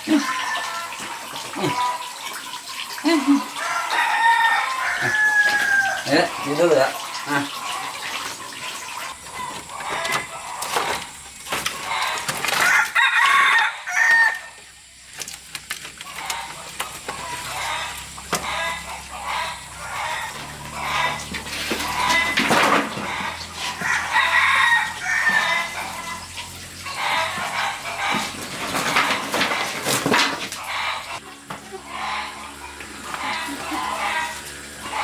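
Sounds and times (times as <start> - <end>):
hens clucking: 0.0 - 35.0
rooster crowing: 3.4 - 6.8, 11.8 - 14.7, 16.2 - 35.0.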